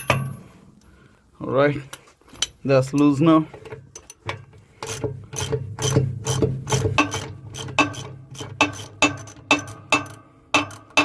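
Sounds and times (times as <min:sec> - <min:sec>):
ratchet wrench clicking: 0:04.8 - 0:11.0.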